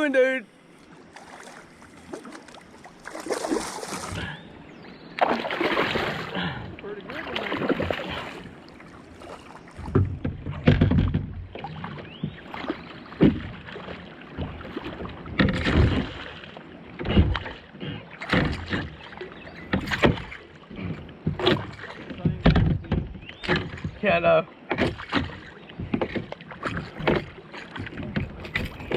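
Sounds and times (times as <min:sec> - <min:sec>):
knocks against boat hull: 0:09.8 - 0:13.6, 0:14.3 - 0:16.1, 0:17.0 - 0:17.6, 0:18.2 - 0:19.0, 0:19.6 - 0:28.9.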